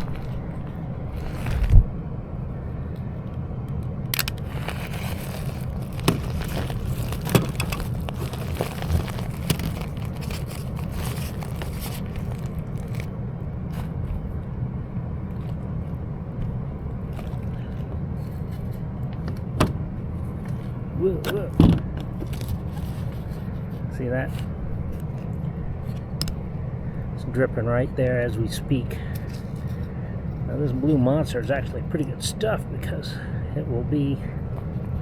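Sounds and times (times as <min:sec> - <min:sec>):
steady low hum: 0:00.0 - 0:35.0
scraping and crackling on plastic pipe: 0:04.2 - 0:14.2.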